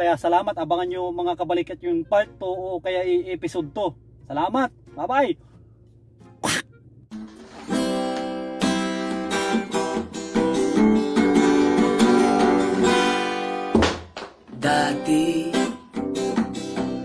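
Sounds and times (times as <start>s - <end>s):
strummed acoustic guitar: 4.8s - 17.0s.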